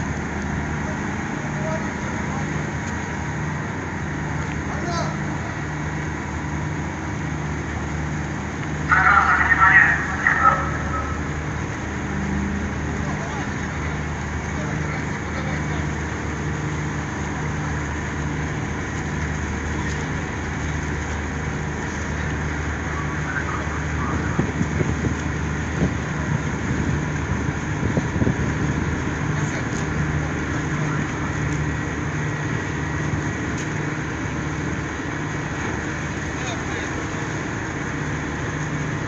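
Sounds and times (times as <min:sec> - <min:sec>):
low engine drone: 0:00.0 - 0:39.0
outdoor noise: 0:00.0 - 0:39.0
loud rumbling: 0:07.5 - 0:20.6.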